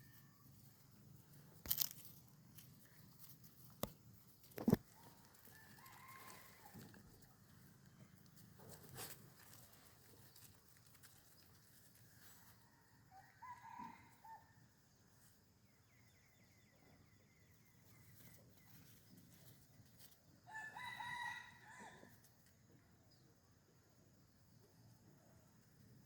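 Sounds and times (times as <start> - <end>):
faint rooster crowing: 4.7 - 7.3, 12.1 - 14.8, 20.4 - 22.3.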